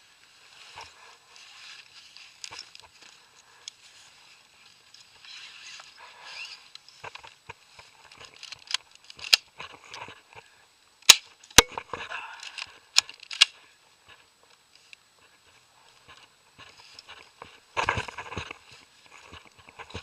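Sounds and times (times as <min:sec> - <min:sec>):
gun handling noise: 0:08.1 - 0:10.1, 0:11.0 - 0:13.6.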